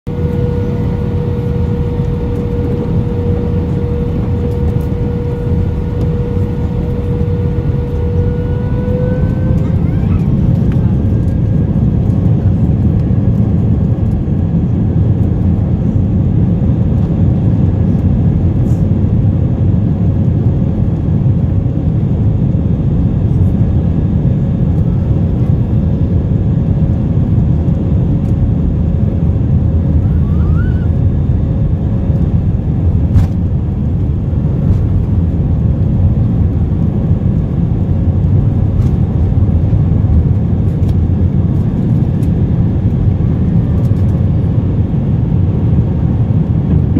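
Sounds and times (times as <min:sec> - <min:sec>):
airplane cabin engine rumble: 0:00.0 - 0:46.9
faint steady whine: 0:00.1 - 0:12.7.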